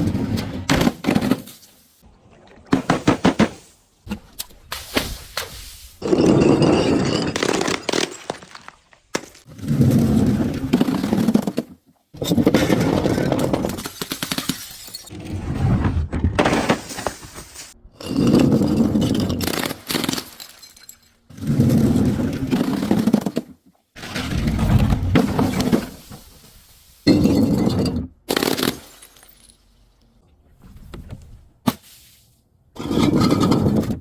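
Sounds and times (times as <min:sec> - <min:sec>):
glass crunching and shattering: 0:06.0 - 0:09.5, 0:13.7 - 0:15.1, 0:18.5 - 0:21.2.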